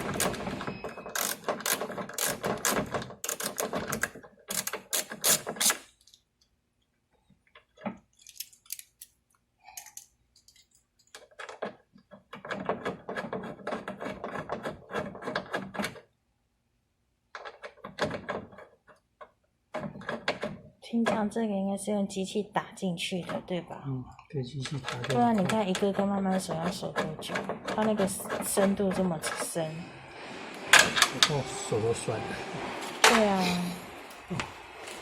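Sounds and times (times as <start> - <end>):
ratcheting hand tool clicking: 1.2 - 6.2.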